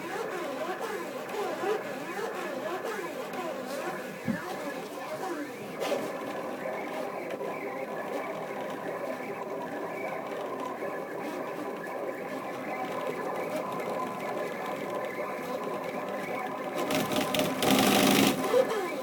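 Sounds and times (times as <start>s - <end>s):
stepper motors whining: 7.7s - 19.0s.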